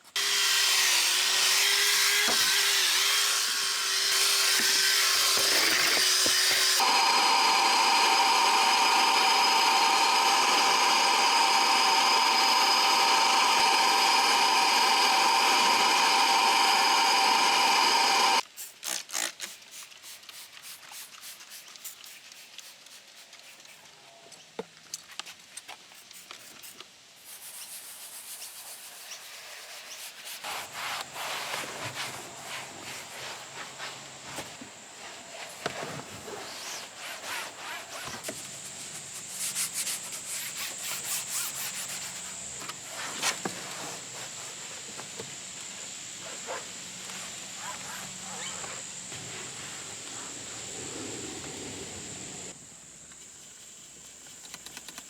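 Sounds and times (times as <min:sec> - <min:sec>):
electric tool motor whining: 0:00.1 - 0:18.4
hand scrubbing on a surface: 0:27.2 - 0:44.8.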